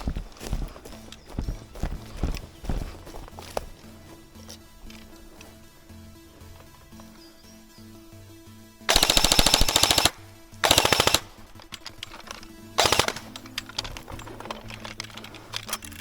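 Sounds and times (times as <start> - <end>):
background music with low tones: 0.0 - 16.0
airsoft single shots: 8.9 - 11.4
airsoft guns firing bursts: 8.9 - 15.5.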